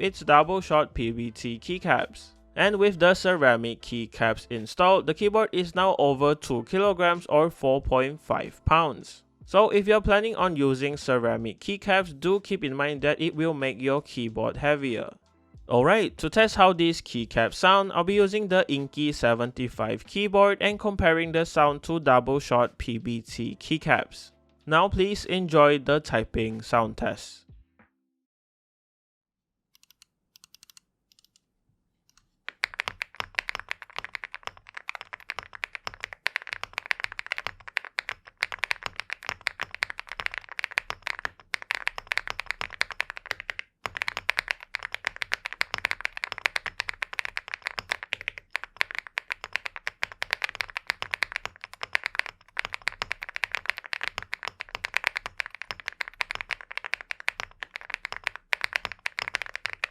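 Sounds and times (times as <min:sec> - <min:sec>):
mechanical keyboard typing: 0:29.8 - 0:31.4, 0:32.5 - 0:59.9.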